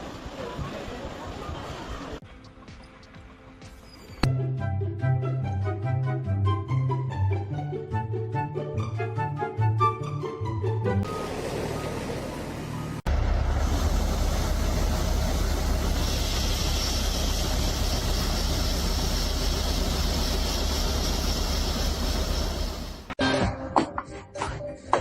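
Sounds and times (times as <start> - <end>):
heavy machine engine running: 11.0 - 23.2.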